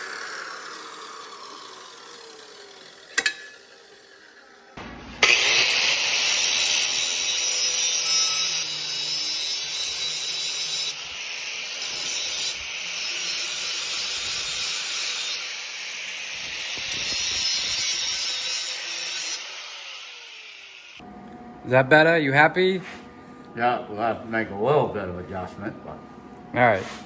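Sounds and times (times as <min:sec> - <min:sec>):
cut-off wheel grinding steel: 0:00.0 - 0:21.0.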